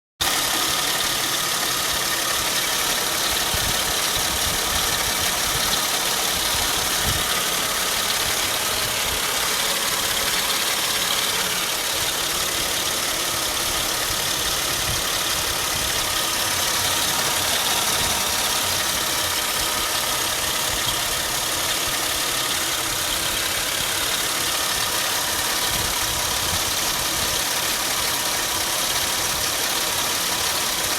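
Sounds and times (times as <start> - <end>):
car engine idling: 0.2 - 30.9.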